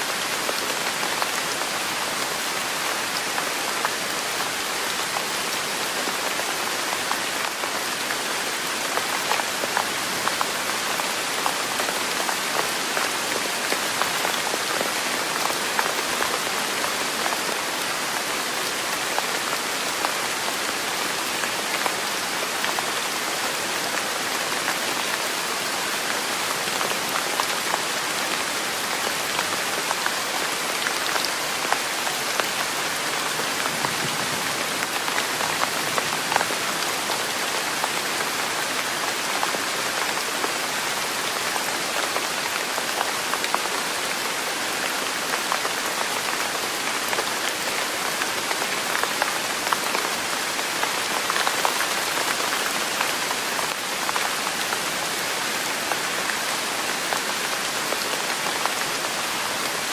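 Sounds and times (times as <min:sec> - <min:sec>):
steady rain: 0:00.0 - 0:59.9.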